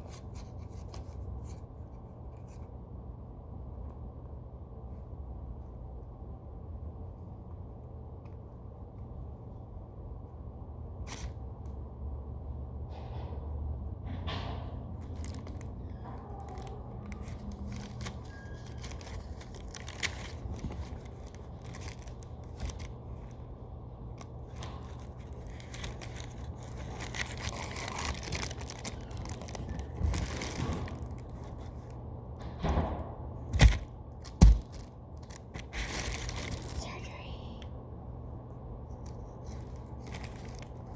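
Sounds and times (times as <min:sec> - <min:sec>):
low steady hum: 0:00.0 - 0:40.9
loud thumps: 0:32.6 - 0:34.9
foam toy being cut and handled: 0:33.5 - 0:36.8.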